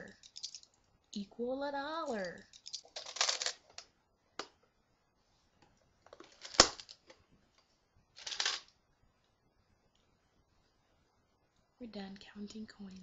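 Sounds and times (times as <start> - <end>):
coins clicking: 0.0 - 0.7, 2.1 - 3.6, 8.2 - 8.7
coins scraping: 0.0 - 0.7, 2.0 - 3.6, 8.2 - 8.7.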